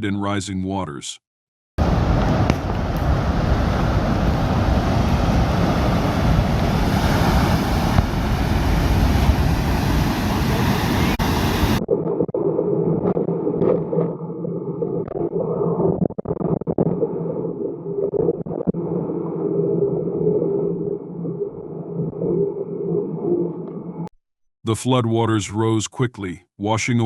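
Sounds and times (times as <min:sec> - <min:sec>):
floodwater rushing: 0:01.8 - 0:11.8.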